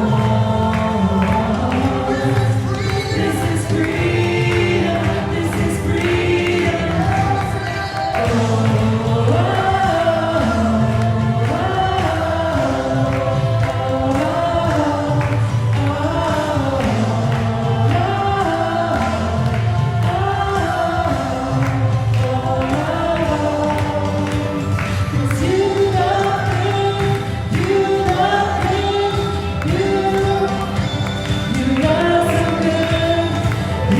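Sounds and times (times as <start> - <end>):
instrumental accompaniment: 0.0 - 33.9
sustained low bass notes: 0.0 - 33.9
voices singing slow melody: 0.0 - 33.9.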